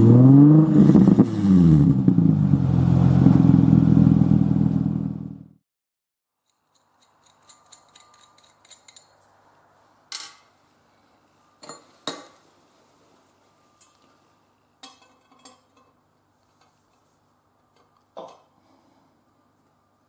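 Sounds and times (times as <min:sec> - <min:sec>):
metal parts clinking: 0:06.4 - 0:09.3.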